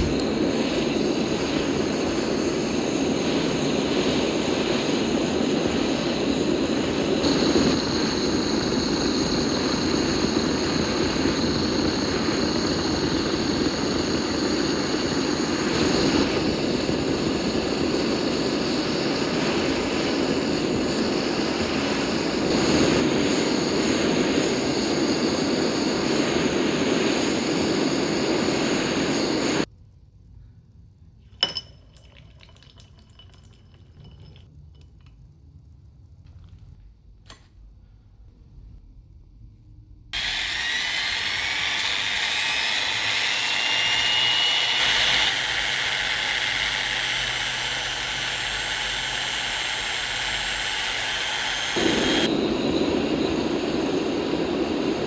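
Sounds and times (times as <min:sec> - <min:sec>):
power tool or blower running: 0:00.0 - 0:01.9, 0:40.2 - 0:53.2.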